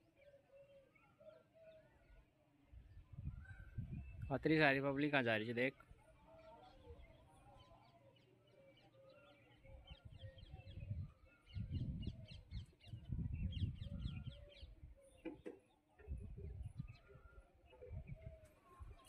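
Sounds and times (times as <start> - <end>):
birds chirping and calling: 0.2 - 19.0
low rumbling microphone noise: 10.2 - 14.4.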